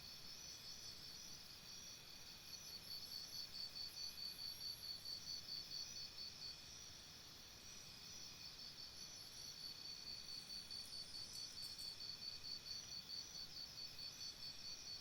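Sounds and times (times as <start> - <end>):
insect chirping: 7.6 - 15.0.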